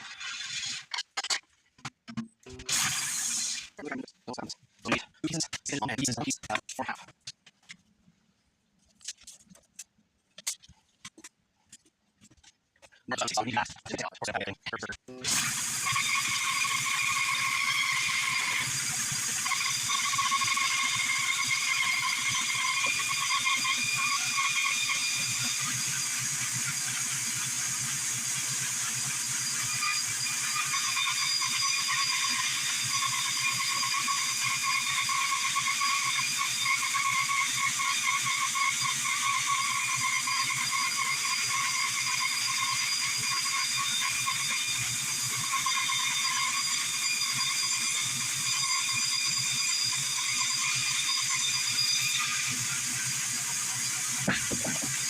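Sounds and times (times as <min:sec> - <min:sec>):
bandsaw whining and rattling: 0:00.0 - 0:01.0, 0:15.2 - 0:55.0.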